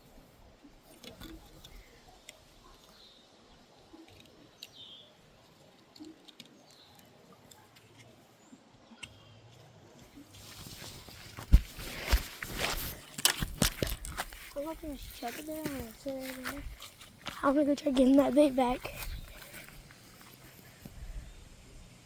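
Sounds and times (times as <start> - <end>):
light clicks and handling noises: 0.2 - 3.1, 3.9 - 21.0
bird chirps: 4.4 - 5.1.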